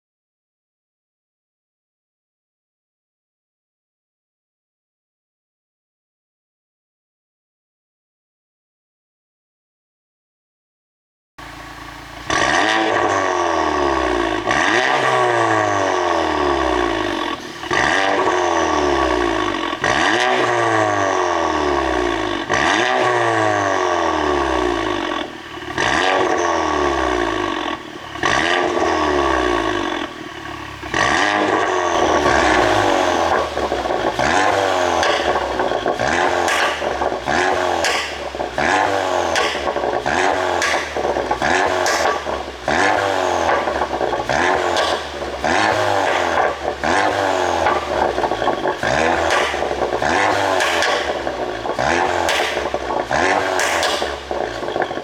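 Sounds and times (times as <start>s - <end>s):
car engine revving: 11.4s - 55.0s
exhaust pops and crackles: 11.4s - 55.0s.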